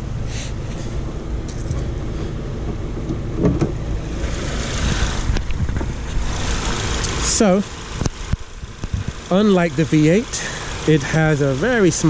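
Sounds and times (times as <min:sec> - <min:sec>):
car engine idling: 0:00.0 - 0:12.0
thump: 0:03.4 - 0:03.8.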